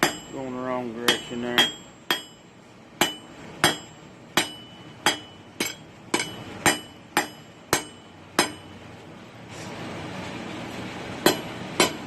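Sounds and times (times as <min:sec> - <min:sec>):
hammer striking hot steel on anvil: 0:00.0 - 0:08.8, 0:11.2 - 0:12.0.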